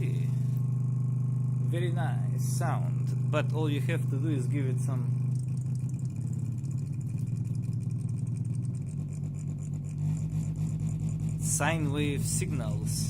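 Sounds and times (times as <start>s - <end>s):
subwoofer buzzing and rattling: 0.0s - 13.0s.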